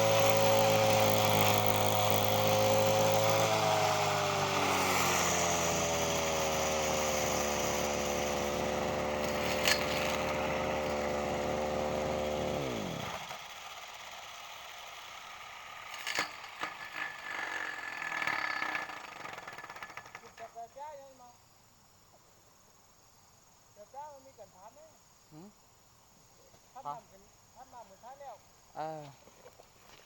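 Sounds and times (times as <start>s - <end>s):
brush cutter engine running: 0.0s - 16.0s.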